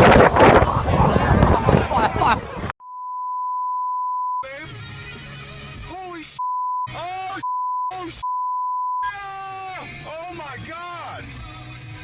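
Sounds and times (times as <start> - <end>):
censor bleep tone: 2.8 - 4.5, 6.4 - 9.1
man crying out: 9.0 - 10.0.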